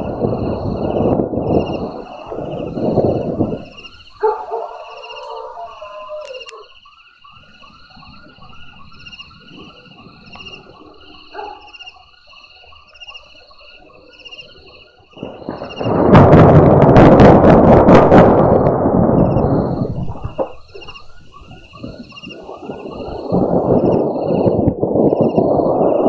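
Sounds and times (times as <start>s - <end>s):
loud thunder: 0.0s - 6.2s, 15.2s - 26.0s
steady high chirping: 0.2s - 15.9s, 19.3s - 26.0s
dog howling and barking: 2.0s - 6.8s, 10.8s - 12.8s.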